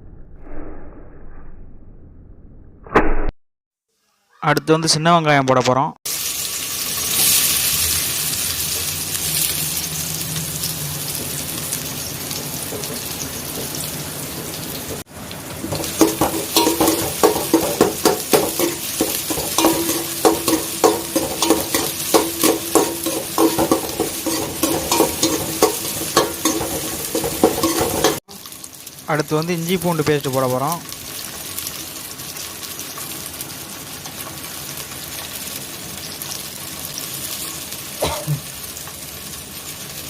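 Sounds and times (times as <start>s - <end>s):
shallots sizzling in oil: 6.1s - 40.0s
spatula scraping pan: 15.6s - 28.2s.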